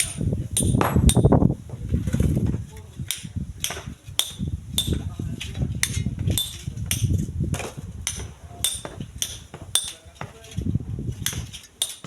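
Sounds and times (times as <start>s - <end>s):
stone being struck: 0.0s - 1.4s, 3.1s - 5.1s, 5.8s - 10.3s, 11.2s - 12.0s
wind buffeting microphone: 0.0s - 12.0s.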